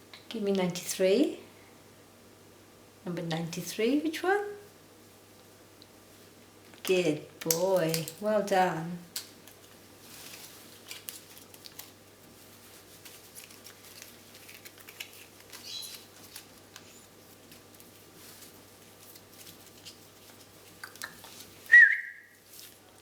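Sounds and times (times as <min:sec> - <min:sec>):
faint clicks and scratching: 0:09.2 - 0:21.6
card rustling: 0:09.2 - 0:21.8
parrot chirp: 0:15.6 - 0:16.0.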